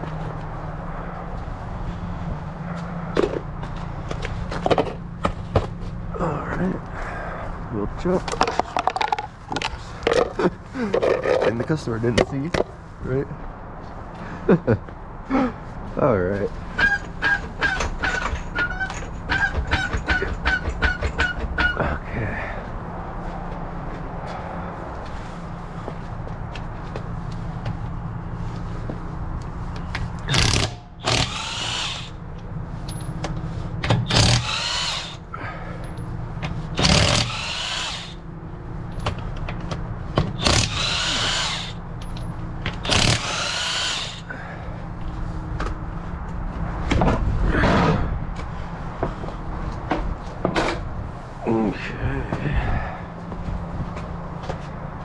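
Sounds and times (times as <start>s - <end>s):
impact wrench bursts: 16.8s - 21.4s, 30.3s - 32.2s, 33.8s - 35.2s, 36.8s - 38.2s, 40.2s - 44.3s.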